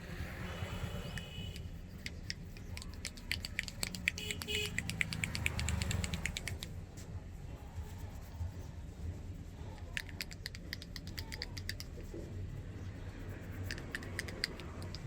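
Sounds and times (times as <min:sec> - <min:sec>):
hands clicking and tapping on head: 0:01.1 - 0:06.8, 0:09.7 - 0:15.0.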